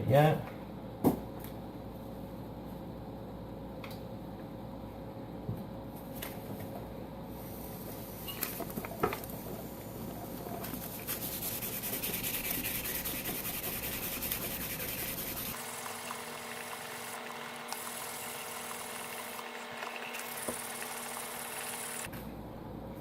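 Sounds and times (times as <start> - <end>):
sanding metal on sandpaper: 10.9 - 15.6.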